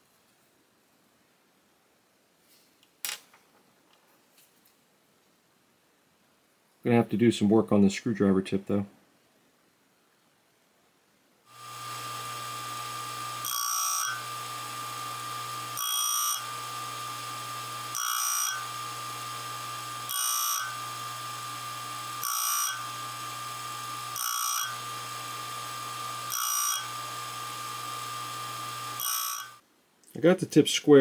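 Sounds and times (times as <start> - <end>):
grinding machine motor humming: 11.5 - 29.6
metal tip grinding rasp: 11.5 - 29.6.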